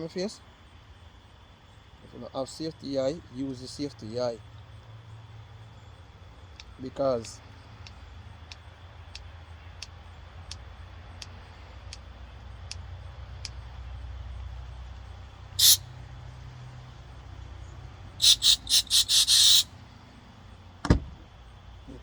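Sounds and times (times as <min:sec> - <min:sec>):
refrigerant hissing from can: 0:15.6 - 0:15.8, 0:18.2 - 0:19.7.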